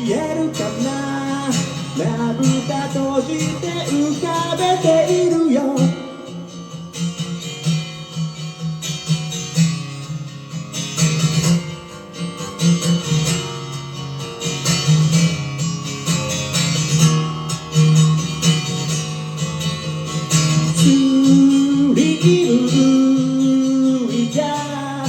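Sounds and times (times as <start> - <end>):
acoustic guitar strumming: 0.0 - 25.0.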